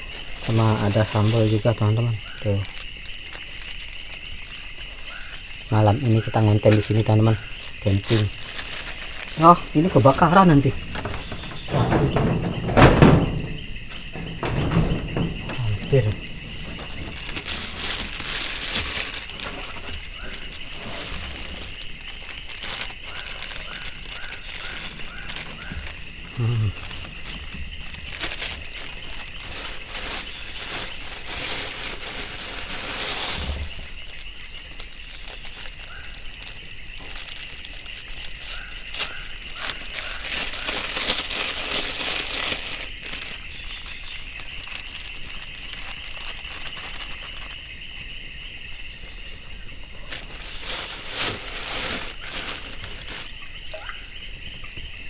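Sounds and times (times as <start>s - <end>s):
rustling noise: 0.0s - 53.8s
night insects chirping: 0.0s - 55.0s
shrill insect drone: 0.0s - 55.0s.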